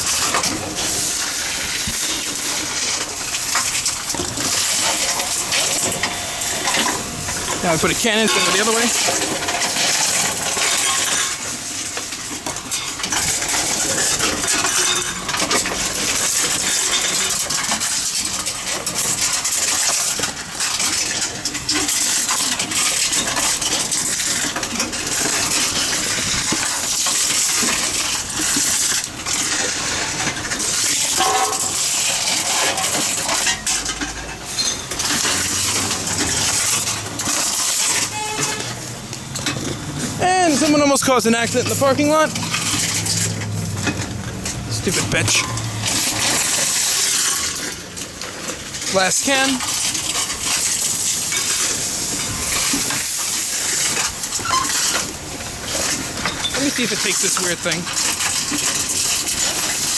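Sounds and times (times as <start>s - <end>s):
containers clattering and knocking: 0.0s - 59.9s
vending machine running: 0.0s - 59.9s.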